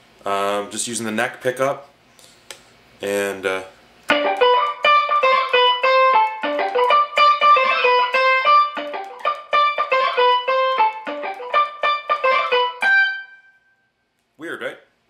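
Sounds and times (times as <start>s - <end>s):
electric guitar staccato melody: 4.1s - 13.5s.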